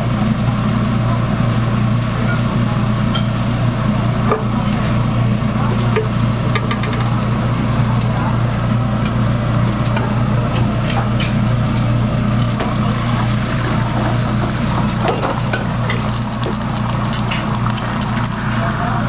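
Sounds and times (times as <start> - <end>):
low mechanical hum: 0.0 - 19.0
omelette sizzling: 0.0 - 19.0
cooking utensils clicking: 5.7 - 11.5, 12.4 - 18.9.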